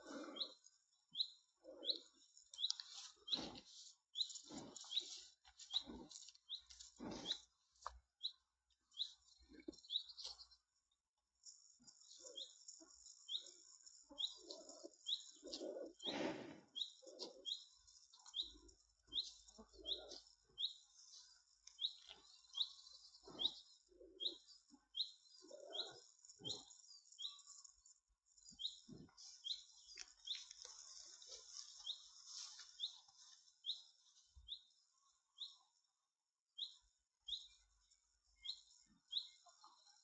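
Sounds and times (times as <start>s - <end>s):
cattle chewing grass: 1.7s - 8.0s, 28.5s - 34.2s.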